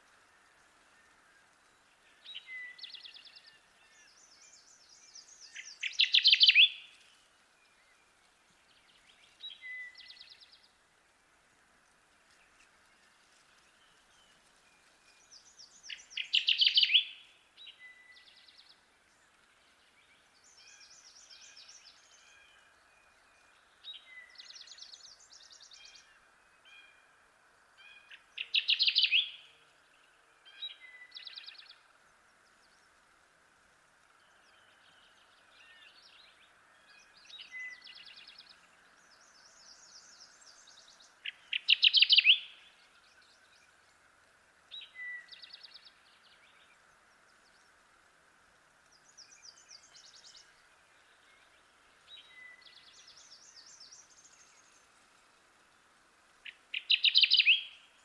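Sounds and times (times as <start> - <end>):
steady background hiss: 0.0 - 58.0
warbler singing rapid song: 34.4 - 43.8, 56.4 - 58.0.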